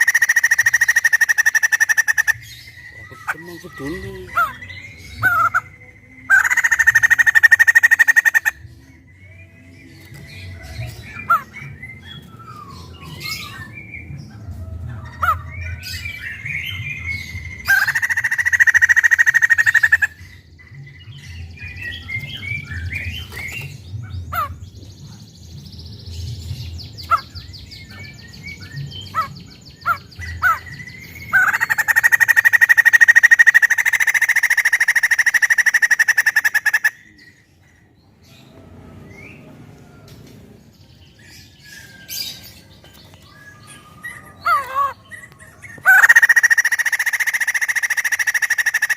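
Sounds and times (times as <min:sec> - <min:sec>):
harsh rattling bird chatter: 0:00.0 - 0:08.8, 0:15.1 - 0:38.5, 0:40.8 - 0:48.9
bird trill: 0:00.0 - 0:48.9
bird chirps and whistles: 0:11.3 - 0:13.8.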